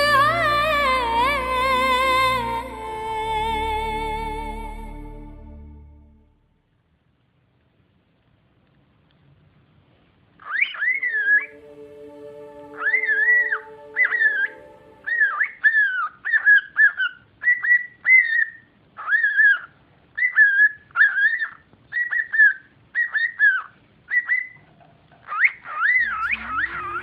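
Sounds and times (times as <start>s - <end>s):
cockatiel whistling: 10.4s - 11.6s, 12.6s - 24.6s, 25.3s - 27.0s.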